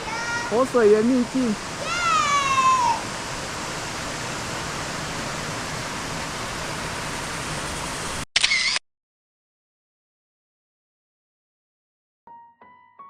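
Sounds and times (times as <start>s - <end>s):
waterfall rushing: 0.0s - 8.2s.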